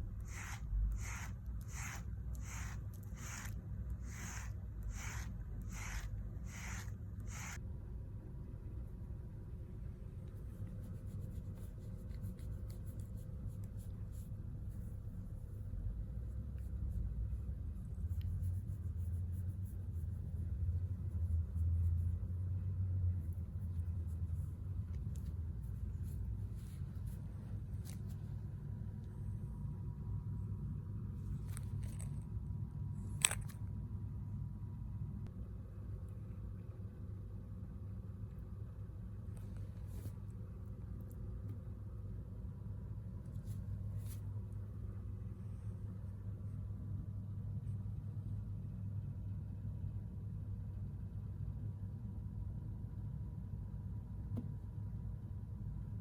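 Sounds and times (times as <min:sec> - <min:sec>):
hand stroking cat fur: 0:00.2 - 0:07.6, 0:10.3 - 0:15.6, 0:18.0 - 0:20.3.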